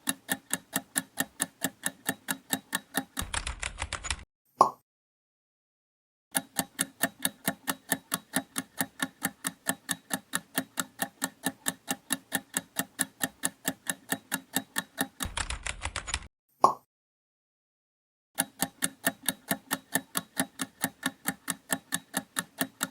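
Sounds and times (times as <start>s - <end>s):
clock ticking: 0.0s - 4.2s, 6.3s - 16.3s, 18.4s - 22.9s
fast rattle of clicks: 0.0s - 4.2s, 6.4s - 16.3s.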